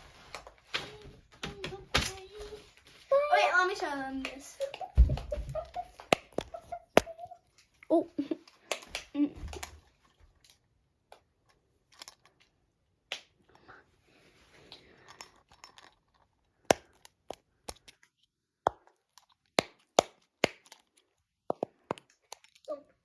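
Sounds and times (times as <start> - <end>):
soft rustling and crackling: 0.0 - 12.6.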